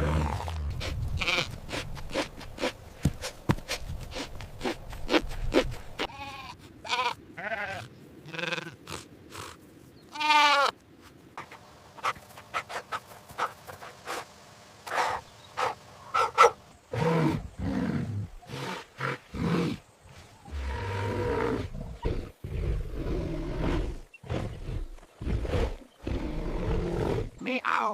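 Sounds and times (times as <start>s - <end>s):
sheep bleating: 6.0s - 9.0s, 10.1s - 10.8s.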